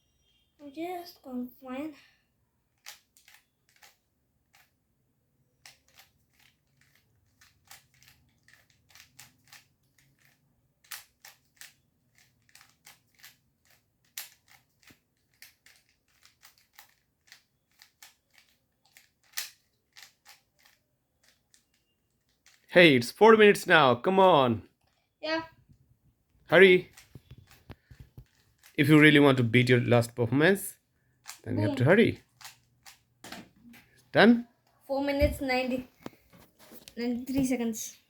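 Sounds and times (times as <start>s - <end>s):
puzzle cube layers clicking: 2.7s - 4.8s, 5.4s - 22.7s.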